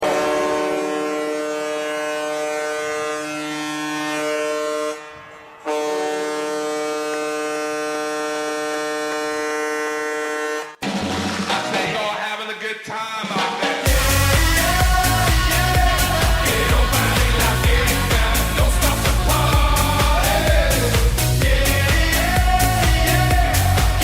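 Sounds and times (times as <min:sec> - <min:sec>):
goal horn blasts: 0:00.0 - 0:10.9, 0:13.9 - 0:19.5.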